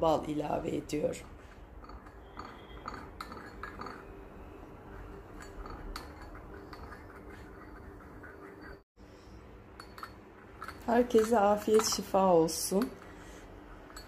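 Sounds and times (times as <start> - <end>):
teaspoon clinking against cup: 1.8 - 4.1.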